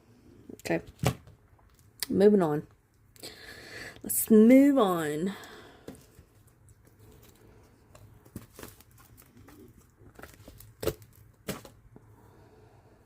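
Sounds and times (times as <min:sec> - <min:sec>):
silicone mold rustling: 0:05.8 - 0:12.1.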